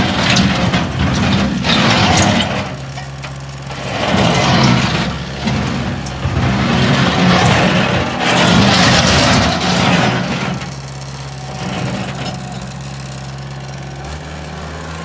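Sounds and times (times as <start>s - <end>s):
loader engine running: 0.0s - 15.0s.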